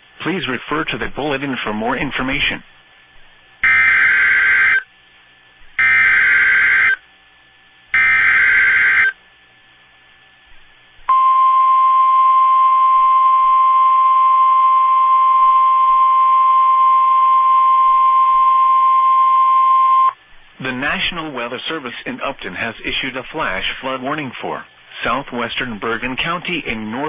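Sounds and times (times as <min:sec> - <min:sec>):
steady warning alarm tone: 0:03.6 - 0:04.9, 0:05.8 - 0:07.0, 0:07.9 - 0:09.2, 0:11.1 - 0:20.2.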